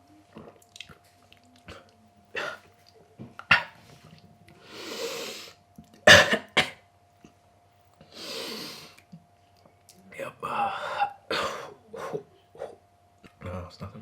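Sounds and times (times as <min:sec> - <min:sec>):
man coughing: 0:06.1 - 0:06.8, 0:11.0 - 0:12.2.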